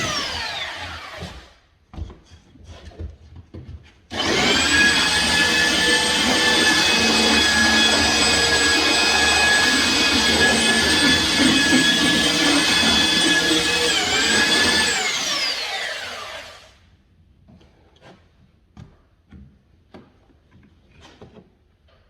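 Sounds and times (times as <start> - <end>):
electric motor whining: 4.2 - 16.6.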